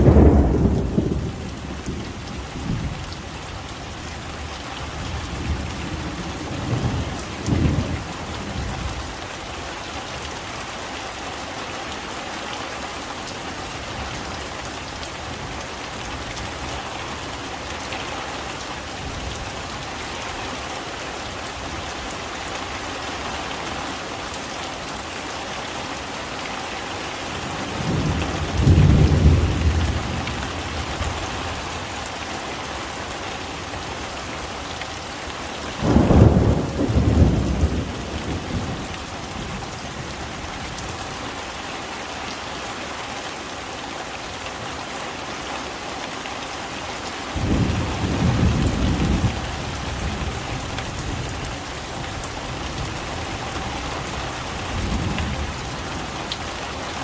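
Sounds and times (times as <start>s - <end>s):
thunder rolling: 0.0s - 2.0s
heavy rain: 0.0s - 57.0s.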